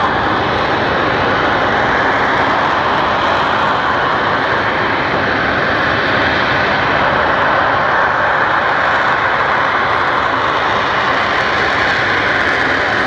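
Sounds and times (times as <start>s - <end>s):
loud steady jet engine noise: 0.0s - 13.0s.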